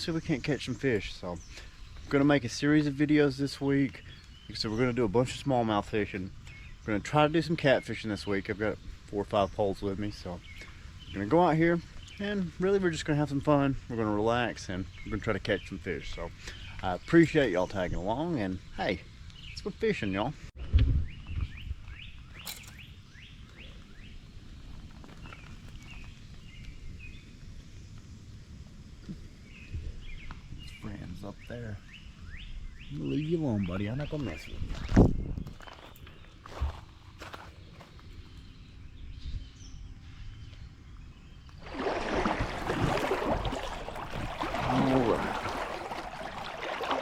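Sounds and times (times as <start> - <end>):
songbirds chirping: 0.0 - 47.0
low wind rumble: 20.5 - 33.2, 33.8 - 37.0, 37.6 - 47.0
water splashing from wading: 41.5 - 47.0.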